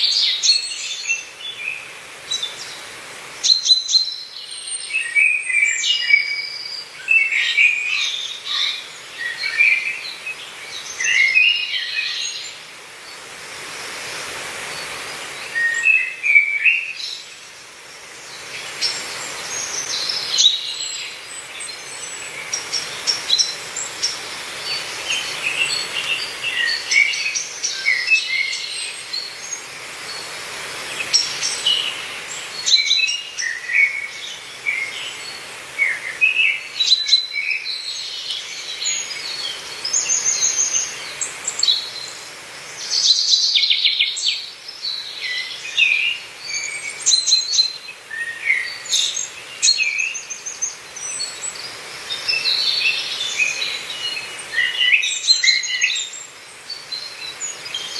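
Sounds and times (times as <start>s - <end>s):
breeze through trees: 0.0s - 57.9s.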